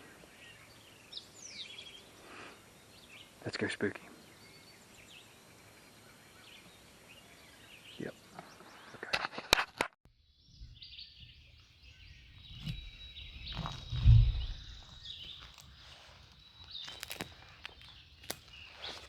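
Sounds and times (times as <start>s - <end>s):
birds chirping and singing: 0.0s - 9.0s, 10.2s - 19.0s
sharp crackles: 12.5s - 19.0s.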